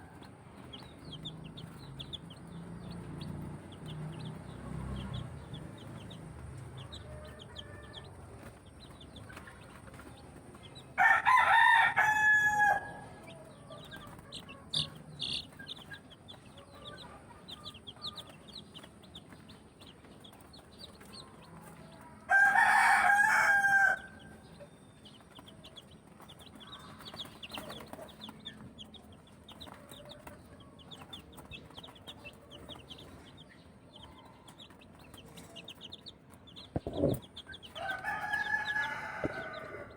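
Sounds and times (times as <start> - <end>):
chicks peeping: 0.0 - 39.9
rooster crowing: 11.0 - 14.0, 22.0 - 24.4, 37.7 - 39.9.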